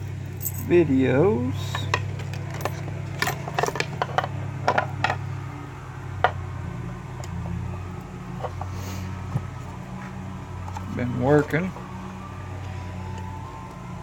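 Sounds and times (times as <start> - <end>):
metal tools clicking and tapping: 1.7 - 5.2.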